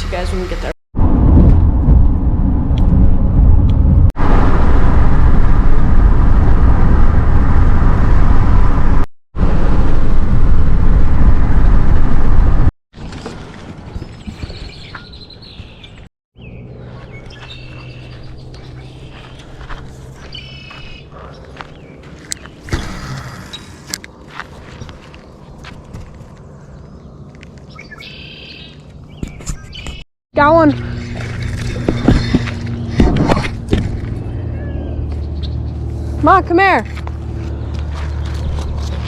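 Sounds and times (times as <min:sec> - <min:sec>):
car road and engine noise: 0:00.0 - 0:39.0
birds chirping: 0:13.8 - 0:25.6, 0:26.2 - 0:33.0, 0:33.9 - 0:36.2.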